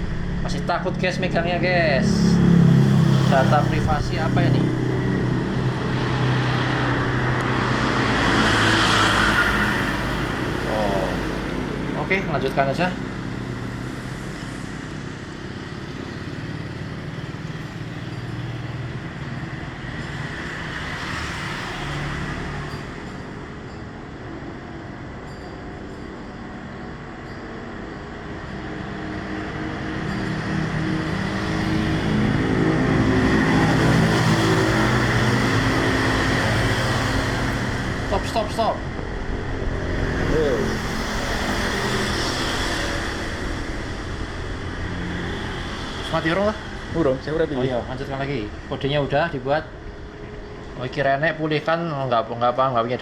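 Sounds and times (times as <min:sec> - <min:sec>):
motor vehicles passing: 0:00.0 - 0:53.0.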